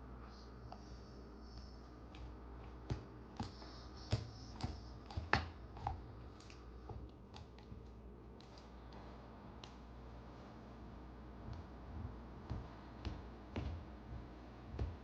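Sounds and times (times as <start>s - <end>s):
dog chewing rawhide bone: 1.5s - 8.0s.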